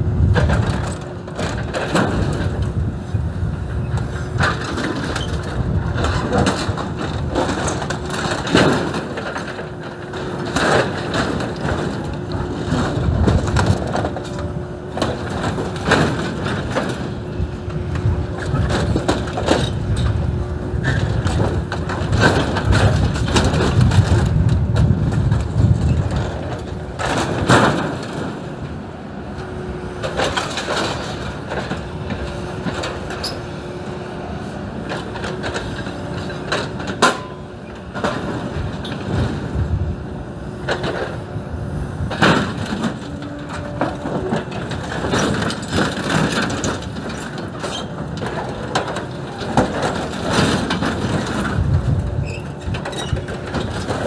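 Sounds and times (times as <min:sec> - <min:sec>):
excavator engine humming: 0:00.0 - 0:54.0.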